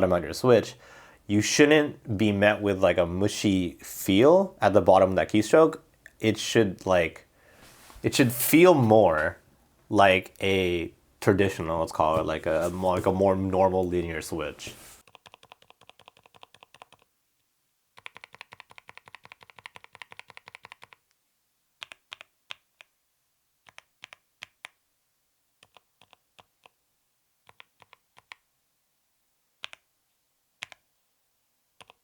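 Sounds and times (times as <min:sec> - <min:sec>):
mechanical keyboard typing: 0:15.0 - 0:17.1, 0:18.0 - 0:21.0, 0:31.8 - 0:32.0.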